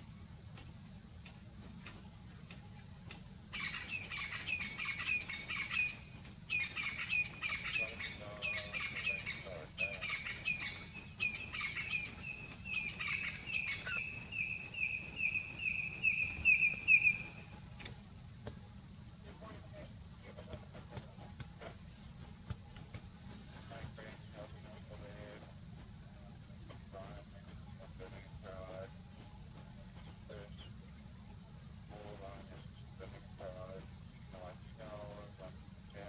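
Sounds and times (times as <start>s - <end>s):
bird harsh chattering calls: 3.5s - 17.5s.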